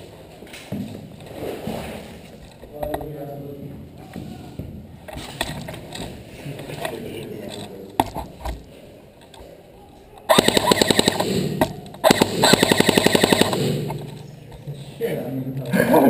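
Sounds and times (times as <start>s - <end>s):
airsoft gun full auto bursts: 10.3s - 14.2s.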